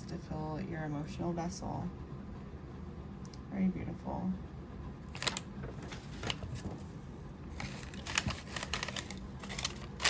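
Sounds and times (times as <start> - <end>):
packaging crinkling and rustling: 5.1 - 10.0.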